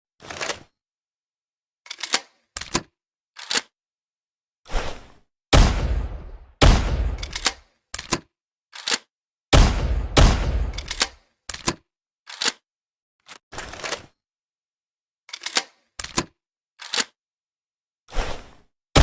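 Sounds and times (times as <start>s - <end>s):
shotgun action clicking: 7.1s - 8.2s, 10.7s - 11.7s.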